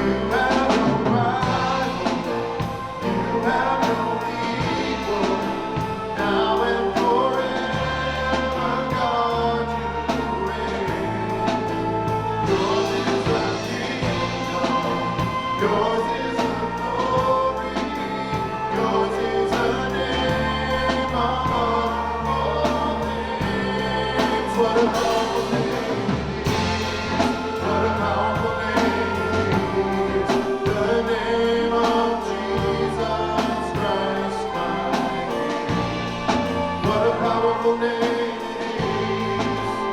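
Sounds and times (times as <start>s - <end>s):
band with bass and beat: 0.0s - 39.9s
group singing gospel music: 0.0s - 39.9s.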